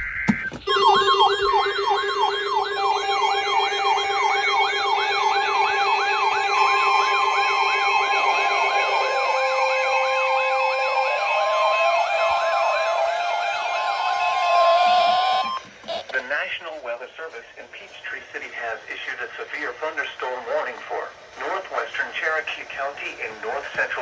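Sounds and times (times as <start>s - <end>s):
yelping siren tone: 0.0s - 16.1s
steady held electronic tones: 0.0s - 16.3s.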